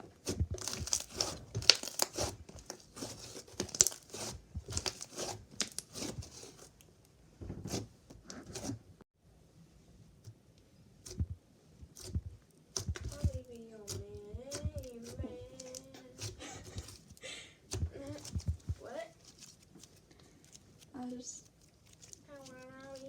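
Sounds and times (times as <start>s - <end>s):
slime crackling and snapping: 0.2s - 6.8s, 12.8s - 23.0s.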